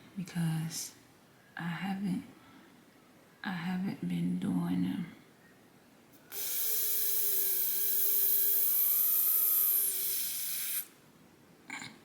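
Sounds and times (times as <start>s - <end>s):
loud steady hiss: 6.3s - 11.0s.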